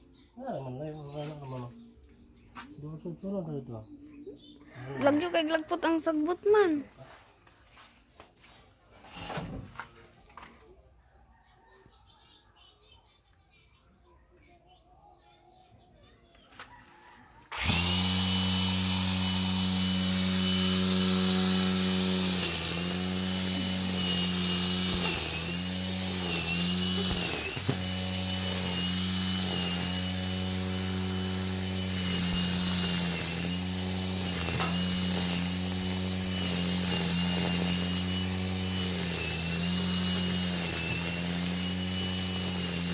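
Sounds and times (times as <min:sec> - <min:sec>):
angle grinder whining: 0:17.5 - 0:42.9.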